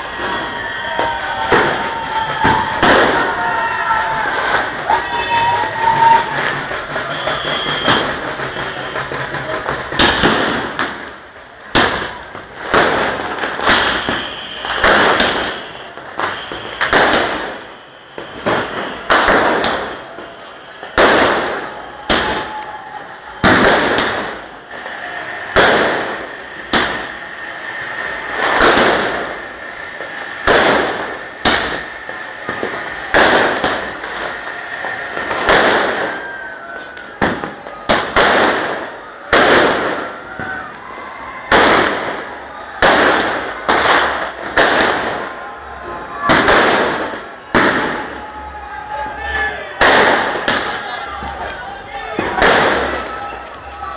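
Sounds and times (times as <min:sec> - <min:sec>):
firecrackers banging: 0:00.0 - 0:53.9.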